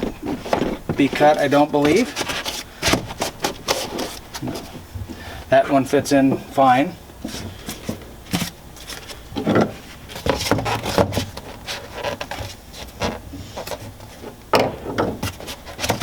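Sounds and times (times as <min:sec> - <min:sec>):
foam rubbing and scuffing: 0:00.0 - 0:04.9, 0:07.2 - 0:14.4.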